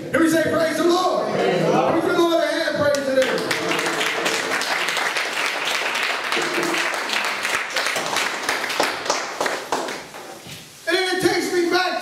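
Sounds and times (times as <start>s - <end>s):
congregation applauding: 2.9s - 10.2s.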